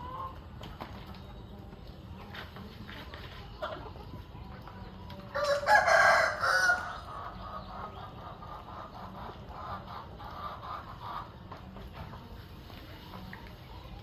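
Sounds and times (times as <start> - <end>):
rooster crowing: 5.4 - 7.1.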